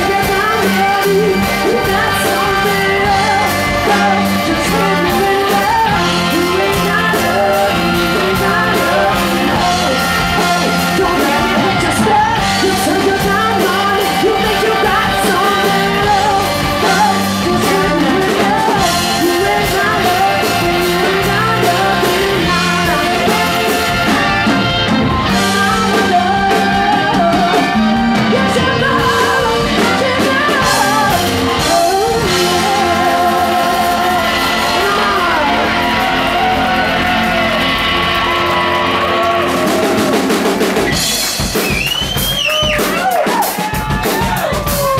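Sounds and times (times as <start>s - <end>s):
live rock band playing: 0.0s - 44.9s
person singing: 0.0s - 44.9s.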